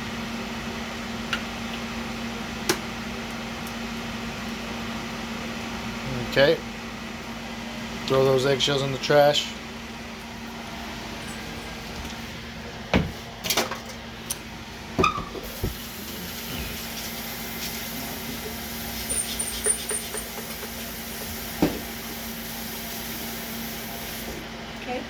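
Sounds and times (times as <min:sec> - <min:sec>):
steady low hum: 0:02.3 - 0:25.0
kitchen knocks and clunks: 0:12.9 - 0:13.9, 0:15.0 - 0:15.8, 0:21.6 - 0:21.9.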